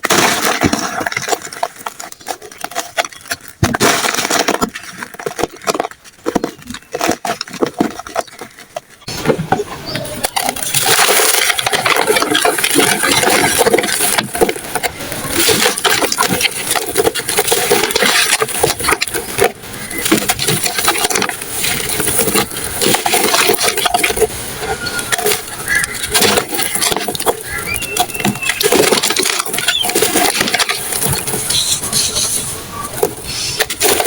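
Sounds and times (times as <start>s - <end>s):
powdery material crumbling: 0.0s - 34.0s.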